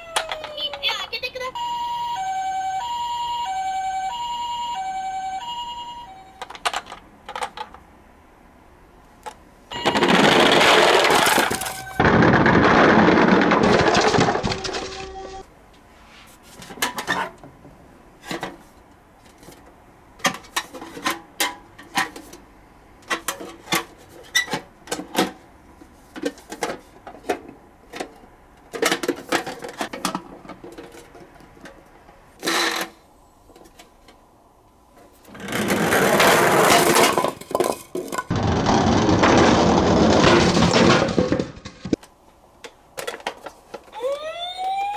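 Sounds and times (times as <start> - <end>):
toy cars clicking and clacking: 0.0 - 0.9, 9.2 - 15.4
toy cars rattling: 9.7 - 15.4, 35.3 - 42.0.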